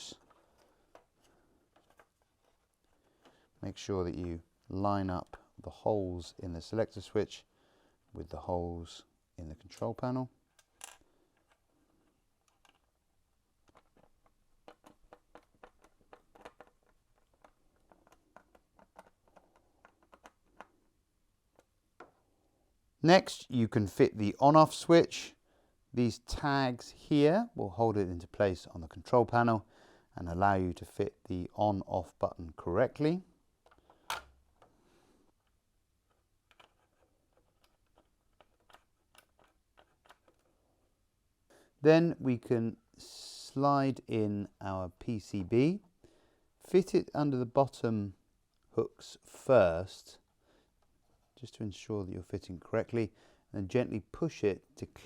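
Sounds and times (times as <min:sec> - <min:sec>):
plastic parts clicking: 0:10.4 - 0:13.0, 0:13.6 - 0:20.8, 0:33.6 - 0:40.5
screwdriver clicking on plastic parts: 0:13.7 - 0:20.8.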